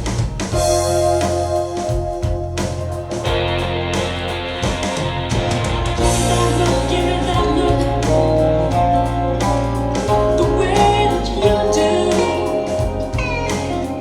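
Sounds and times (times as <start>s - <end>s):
pop song with guitars and drums: 0.0s - 14.0s
person singing: 6.0s - 14.0s.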